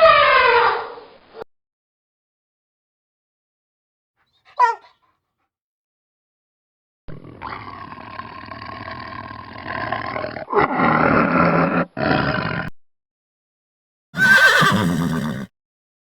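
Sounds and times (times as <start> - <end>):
drawn-out animal call: 4.5 - 4.9, 14.2 - 15.5
short loud animal call: 14.2 - 15.5.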